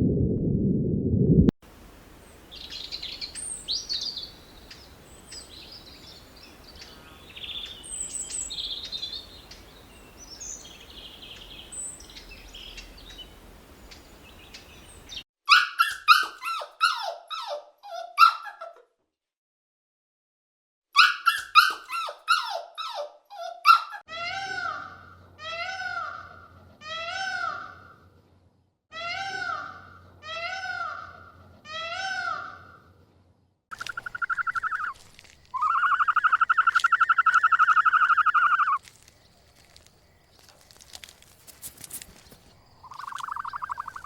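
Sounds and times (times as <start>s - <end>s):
loud quick animal yelps: 15.5s - 18.8s, 21.0s - 24.9s, 35.6s - 38.8s
faint high animal squeaks: 33.7s - 35.0s, 35.6s - 38.8s, 42.9s - 44.0s.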